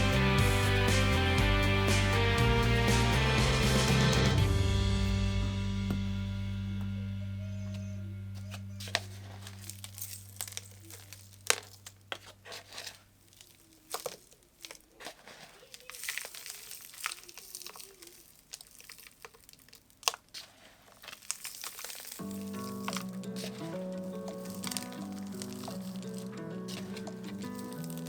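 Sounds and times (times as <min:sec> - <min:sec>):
crinkling and tearing: 0:08.4 - 0:28.0.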